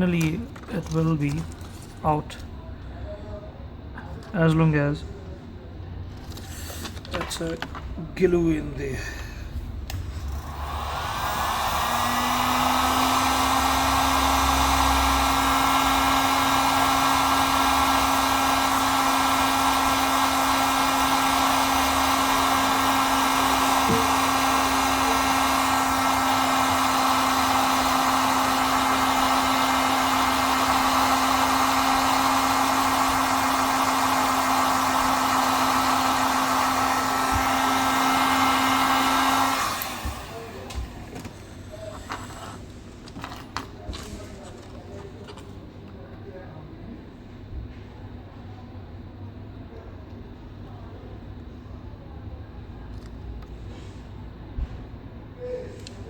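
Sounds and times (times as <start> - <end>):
heat gun blowing hot air: 9.9 - 40.8.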